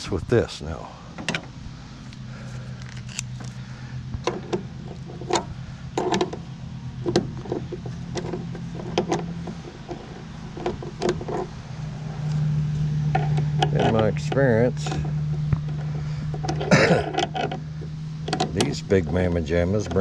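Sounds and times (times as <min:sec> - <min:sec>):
low hum: 0:00.0 - 0:20.0
scrap parts clicking and knocking: 0:04.2 - 0:06.4, 0:07.0 - 0:11.5, 0:13.1 - 0:20.0.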